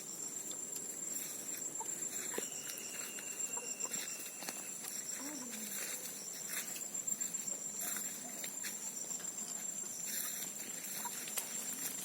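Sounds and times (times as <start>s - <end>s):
insects trilling: 0.0s - 12.0s.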